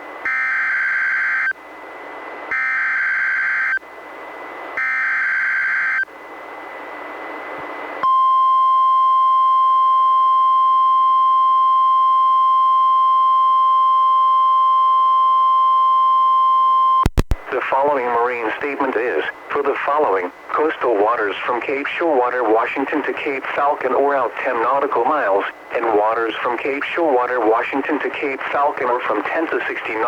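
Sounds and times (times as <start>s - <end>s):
steady warning alarm tone: 0.2s - 1.6s, 2.5s - 3.8s, 4.8s - 6.1s
receiver hiss: 11.6s - 30.0s.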